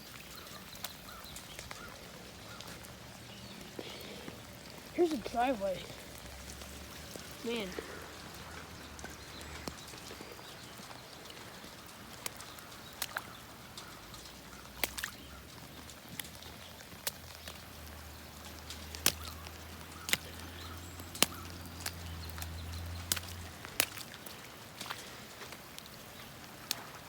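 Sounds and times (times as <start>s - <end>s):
big raindrops tapping: 0.0s - 27.0s
faint rain hiss: 0.0s - 27.0s.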